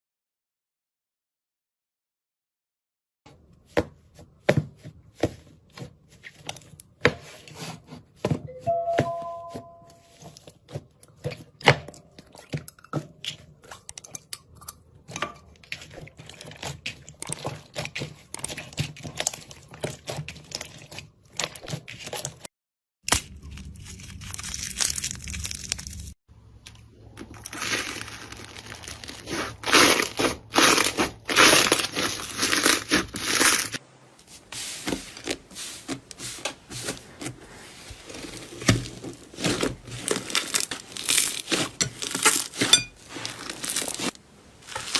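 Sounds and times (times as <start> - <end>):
slime crackling and popping: 27.3 - 33.8, 38.8 - 42.7.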